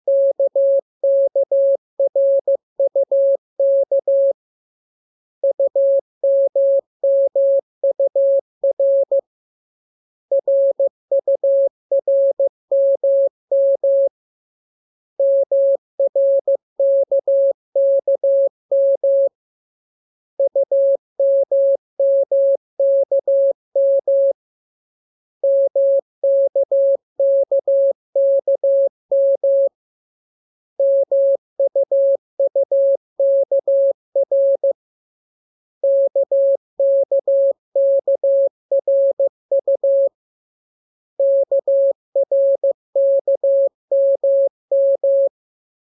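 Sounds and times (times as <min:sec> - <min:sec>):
morse code beeps: 0:35.8 - 0:40.2.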